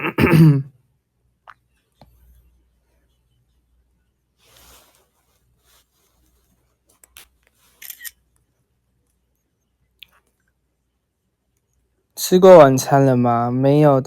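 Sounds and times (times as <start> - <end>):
soft rustle: 1.7 - 10.7
crinkling rustle: 4.4 - 8.2.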